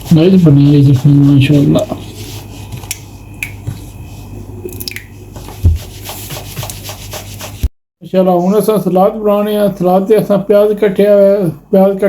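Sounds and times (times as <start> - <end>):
steady low hum: 0.0 - 7.7
heavy thump: 5.6 - 5.9.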